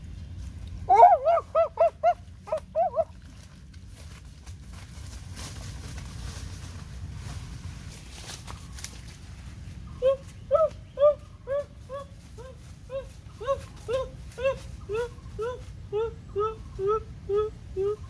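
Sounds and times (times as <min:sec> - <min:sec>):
animal yelping: 0:00.9 - 0:03.1, 0:10.0 - 0:18.0
faint rustle: 0:02.4 - 0:16.8.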